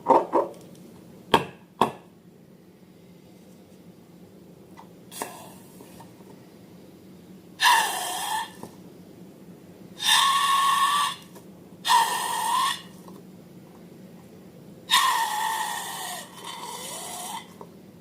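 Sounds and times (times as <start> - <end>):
air squealing out of a balloon: 7.6 - 8.6, 10.0 - 12.9, 14.9 - 17.5.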